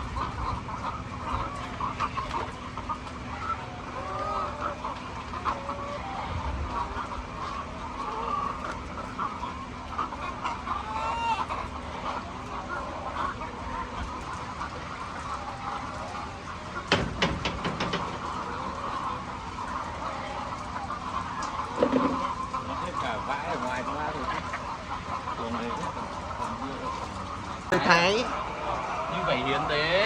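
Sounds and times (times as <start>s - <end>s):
chickens clucking: 0.0s - 30.0s
sharp knocks: 16.9s - 18.1s.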